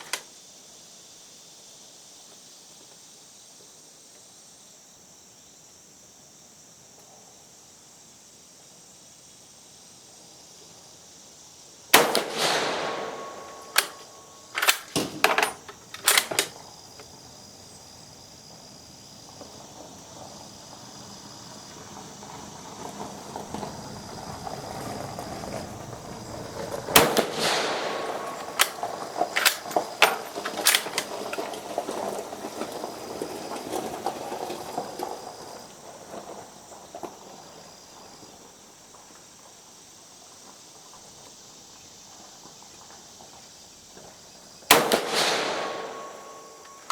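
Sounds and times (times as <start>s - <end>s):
rifle shots: 11.9s - 16.5s, 26.9s - 31.0s, 44.7s - 46.9s
rifle bolt clacking: 12.0s - 16.5s, 27.0s - 28.8s.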